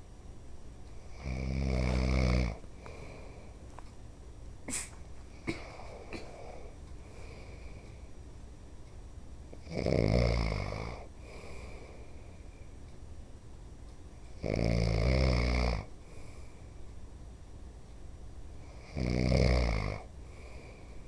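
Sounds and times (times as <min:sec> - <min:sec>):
quiet breathing: 0:00.9 - 0:03.9, 0:05.3 - 0:08.3, 0:10.6 - 0:13.0, 0:15.8 - 0:17.1, 0:19.8 - 0:21.0
man snoring: 0:01.1 - 0:02.6, 0:09.6 - 0:11.1, 0:14.4 - 0:15.9, 0:18.8 - 0:20.1.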